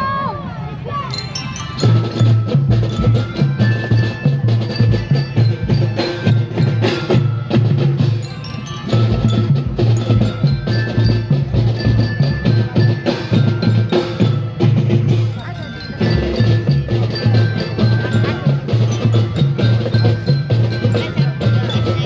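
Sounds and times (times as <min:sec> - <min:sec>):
mallet bell melody: 0:01.0 - 0:22.0
drums pounding: 0:01.1 - 0:22.0.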